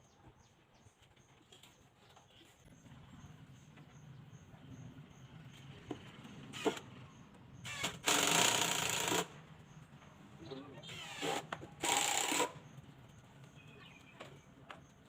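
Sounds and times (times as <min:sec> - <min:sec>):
power tool burst: 0:07.6 - 0:09.4, 0:10.8 - 0:12.6.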